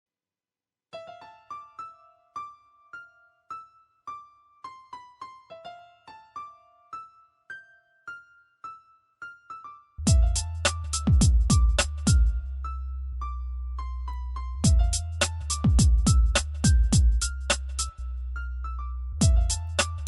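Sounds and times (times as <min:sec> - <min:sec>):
electric piano melody: 0:01.0 - 0:20.0
beat with deep bass and kick drum: 0:10.1 - 0:12.5, 0:14.6 - 0:17.9, 0:19.2 - 0:20.0.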